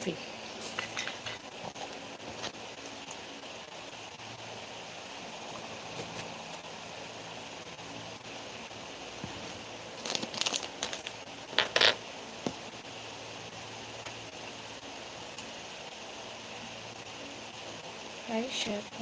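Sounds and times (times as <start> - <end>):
low background hiss: 0.0 - 19.0
crinkling rustling noises: 9.2 - 12.0.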